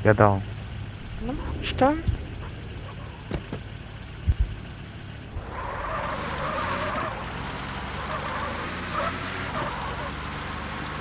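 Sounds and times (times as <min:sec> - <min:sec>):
motor vehicle running: 0:00.0 - 0:11.0
wavering whine: 0:00.4 - 0:08.6.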